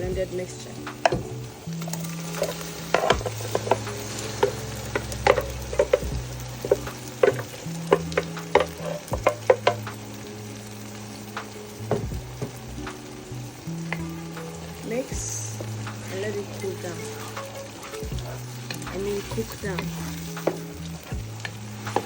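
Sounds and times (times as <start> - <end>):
oil sizzling in a pot: 0.0 - 22.0
spoon clinking and scraping pot: 1.0 - 9.9, 16.9 - 20.8.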